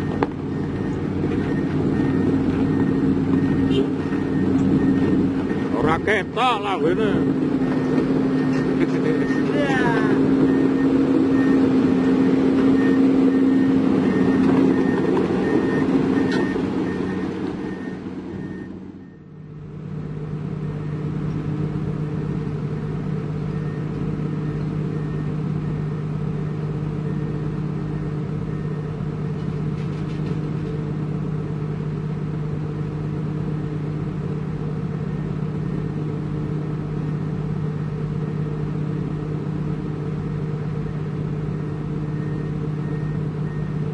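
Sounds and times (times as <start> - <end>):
reversing alarm beeping: 0.0 - 19.6, 23.5 - 28.9, 40.8 - 43.9
diesel engine running loudly: 0.0 - 43.9
low engine drone: 0.0 - 43.9.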